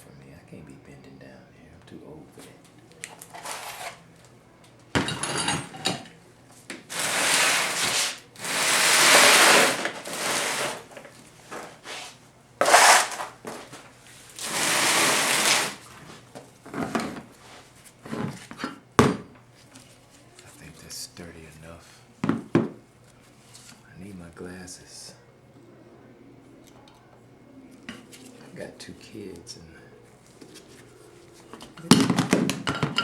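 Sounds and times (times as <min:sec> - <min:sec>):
hard objects scraping and clattering: 0:03.1 - 0:04.1, 0:05.0 - 0:19.2, 0:30.4 - 0:33.0.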